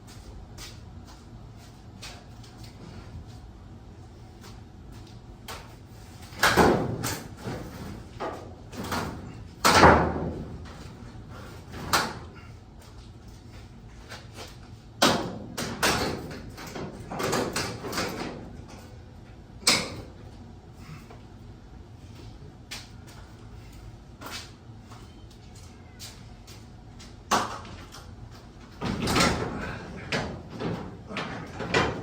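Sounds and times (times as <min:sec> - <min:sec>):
bangs and knocks on garage door: 0:06.4 - 0:10.6, 0:28.8 - 0:32.0.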